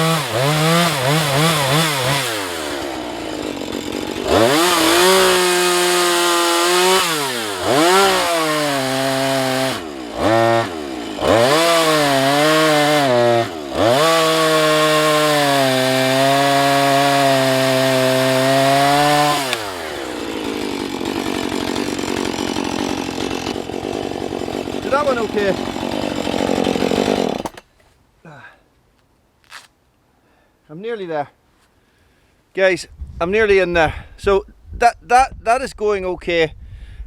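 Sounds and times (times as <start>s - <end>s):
chainsaw cutting log: 0.0s - 27.7s.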